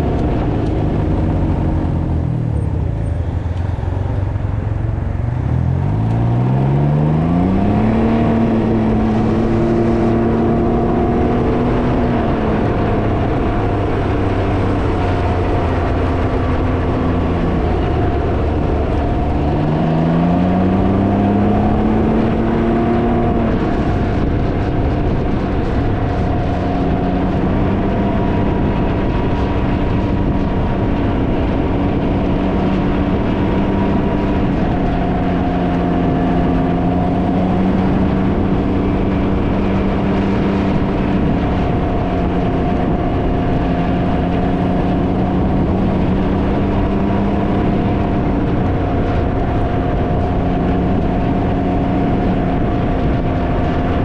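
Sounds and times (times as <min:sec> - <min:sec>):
three-cylinder engine cruising: 0:00.0 - 0:54.0
wind noise on microphone: 0:00.0 - 0:54.0.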